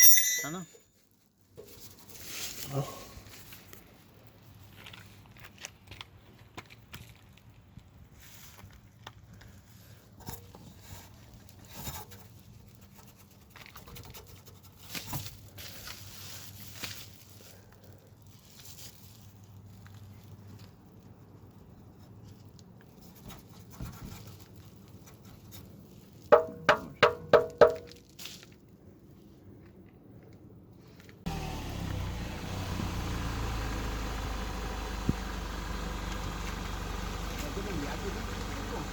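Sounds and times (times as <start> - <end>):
loud ringing metallic knocks: 26.4 - 27.7.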